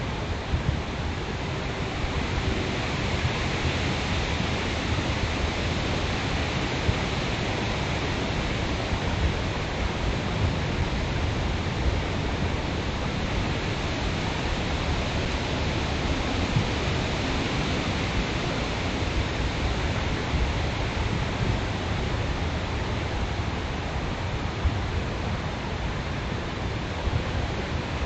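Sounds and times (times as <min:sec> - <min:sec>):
steady rushing noise: 0:00.0 - 0:28.0.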